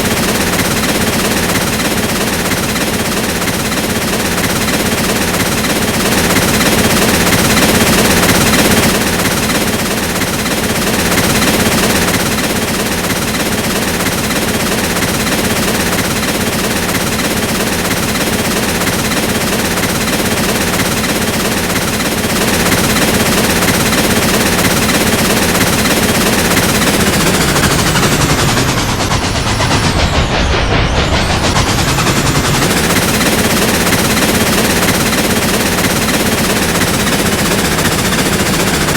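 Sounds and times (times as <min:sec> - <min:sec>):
train rattling clatter: 0:00.0 - 0:38.9.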